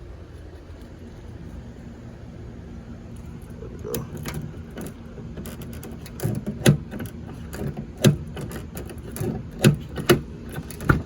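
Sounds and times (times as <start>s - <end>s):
car door latch clunking: 3.9s - 11.0s.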